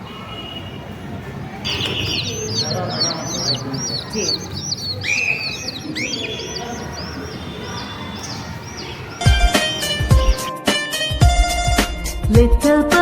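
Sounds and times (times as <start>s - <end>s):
longer bird calls: 1.6s - 10.5s
small birds chirping: 1.6s - 10.6s.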